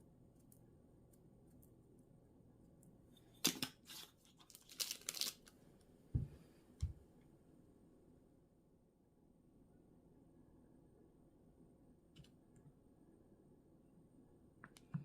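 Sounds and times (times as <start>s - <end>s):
crinkling tearing handling noise: 3.3s - 5.6s
dull thumps: 6.2s - 7.0s.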